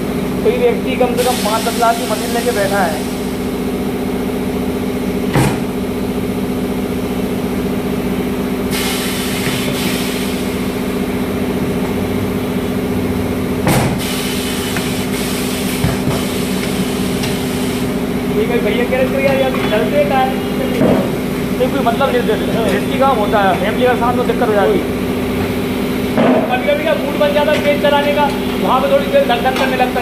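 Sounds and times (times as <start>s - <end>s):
machinery humming: 0.0s - 30.0s
air hiss: 1.2s - 3.4s, 8.7s - 10.6s, 14.0s - 18.0s
sharp air bursts: 1.2s - 3.5s, 8.7s - 10.7s, 13.9s - 18.0s.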